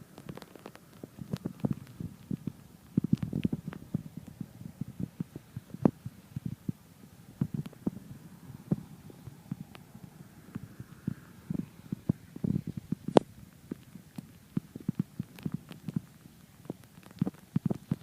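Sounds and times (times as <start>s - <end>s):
raindrops tapping on surface: 0.0s - 18.0s.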